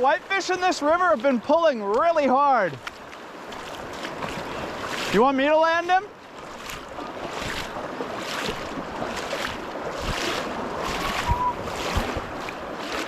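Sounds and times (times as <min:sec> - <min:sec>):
river water rushing and lapping: 0:00.0 - 0:13.0
wind on microphone: 0:06.7 - 0:13.0.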